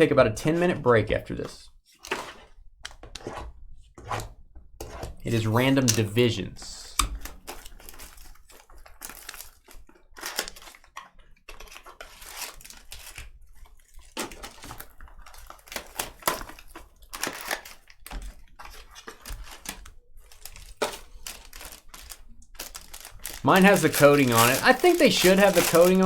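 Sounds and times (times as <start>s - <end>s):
plastic wrap and cardboard crinkling: 7.2s - 26.0s.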